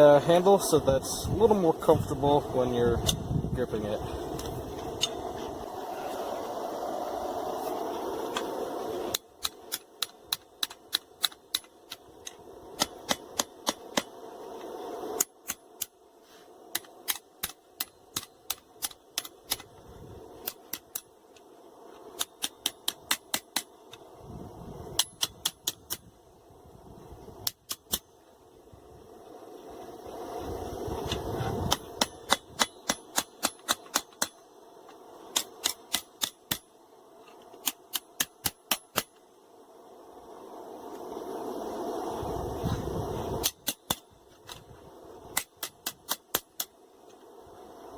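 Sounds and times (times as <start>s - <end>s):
steady rushing noise: 0.0s - 47.9s
hammer striking steel on anvil: 31.7s - 34.4s.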